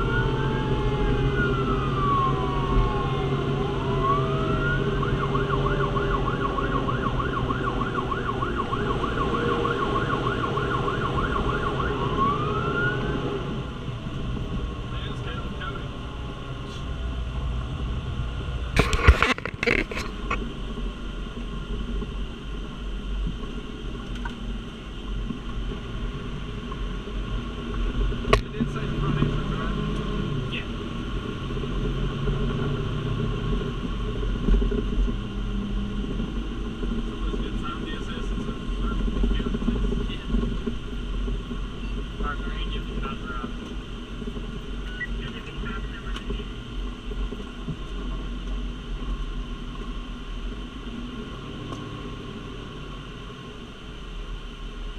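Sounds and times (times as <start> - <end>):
fire engine siren: 0.0 - 14.2
fire engine running: 0.0 - 54.9.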